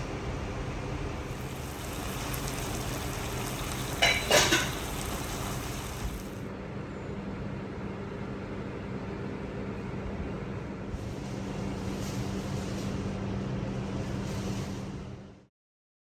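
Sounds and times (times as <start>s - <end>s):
steady mechanical hum: 0.0s - 15.5s
even hiss: 1.3s - 6.4s.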